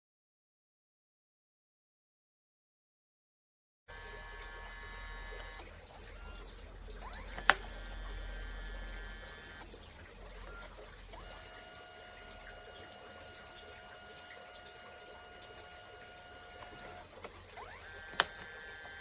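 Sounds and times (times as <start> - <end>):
photo printer motors whining: 3.9 - 19.0.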